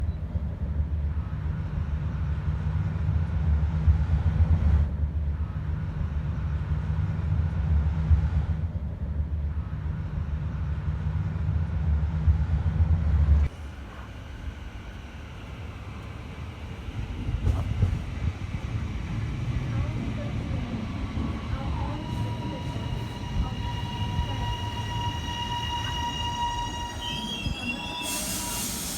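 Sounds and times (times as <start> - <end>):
electric train rumbling: 0.0 - 28.9
train brake squeal: 20.8 - 28.9.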